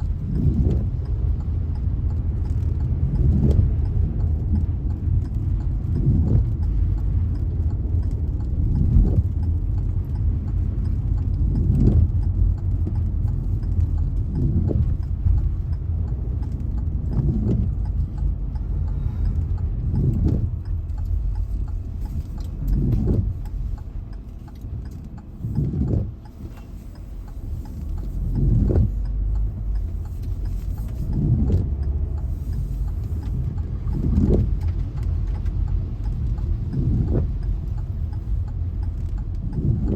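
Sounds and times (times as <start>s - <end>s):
car engine rumbling: 0.0s - 39.9s.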